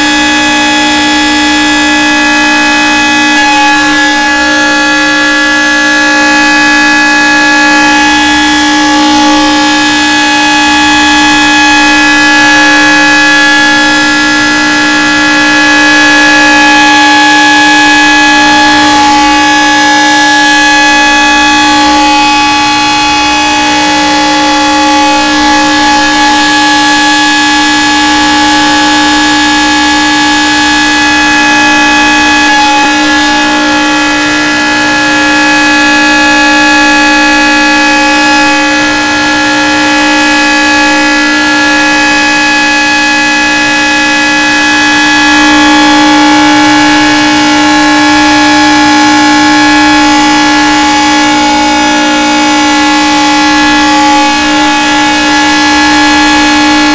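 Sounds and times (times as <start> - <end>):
warning siren: 0.0 - 56.9.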